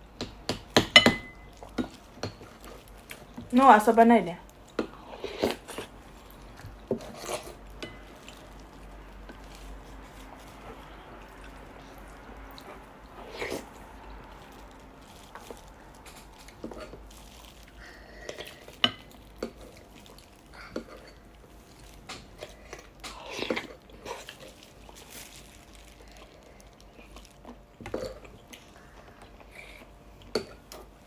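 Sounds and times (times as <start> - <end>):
spoon clinking against bowl: 0.9 - 1.5
quiet chewing: 1.4 - 3.5, 4.4 - 31.0.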